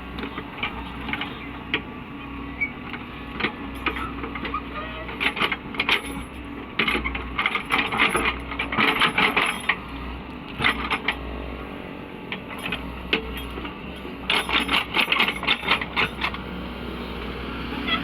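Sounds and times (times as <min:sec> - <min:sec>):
excavator diesel engine running: 0:00.0 - 0:18.0
metallic clanking and rattling: 0:02.9 - 0:09.9, 0:10.5 - 0:16.5.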